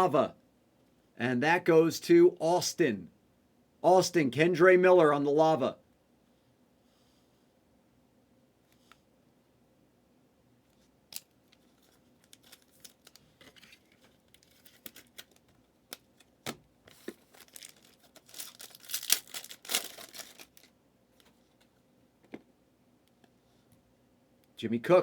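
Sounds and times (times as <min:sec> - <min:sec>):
wrapper tearing and crinkling: 0:11.1 - 0:16.3, 0:16.9 - 0:20.7.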